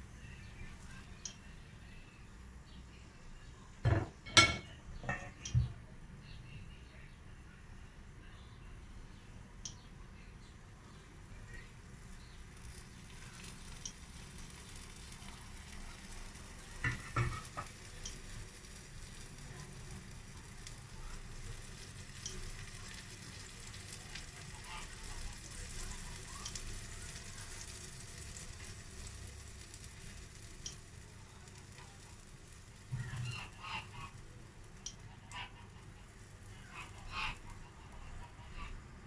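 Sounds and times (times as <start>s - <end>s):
batter sizzling in a pan: 11.0s - 38.2s
small ticks: 12.4s - 16.3s, 17.6s - 18.3s, 22.2s - 23.0s, 24.1s - 26.8s, 30.6s - 30.8s.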